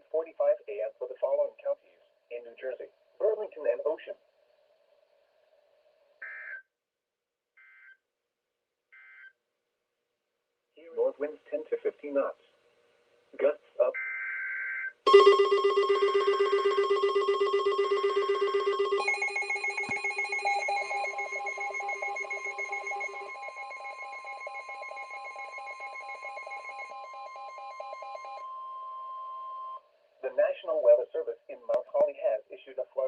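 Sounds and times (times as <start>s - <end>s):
data burst: 15.1s - 28.4s
steady high tone: 15.1s - 28.5s
pulsing multi-tone ringing alarm: 15.1s - 29.8s.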